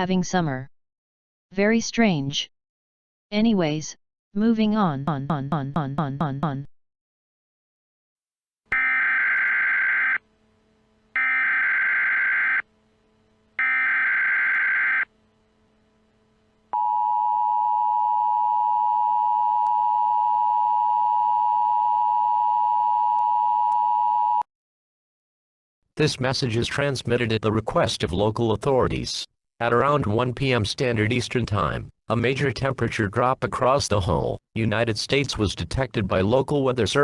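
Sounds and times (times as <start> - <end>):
two-tone attention signal: 8.7 - 10.2, 11.2 - 12.6, 13.6 - 15.1
data header tone bursts: 8.8 - 10.2, 11.2 - 12.6, 13.6 - 15.1.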